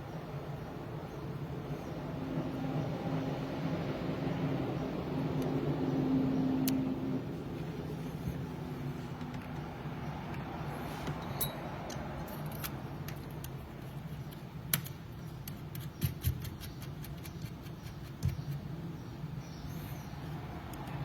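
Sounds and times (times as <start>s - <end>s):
small parts clicking: 11.2s - 18.3s.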